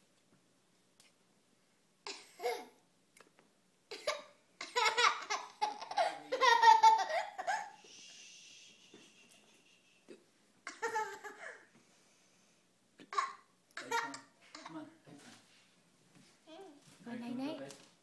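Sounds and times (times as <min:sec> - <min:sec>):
child laughing: 0:04.1 - 0:07.8, 0:08.7 - 0:11.7.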